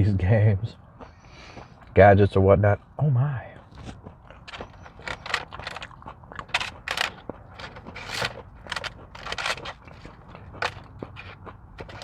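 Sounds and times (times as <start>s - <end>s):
food crunching: 2.8s - 12.0s
food packaging rustling: 4.5s - 12.0s.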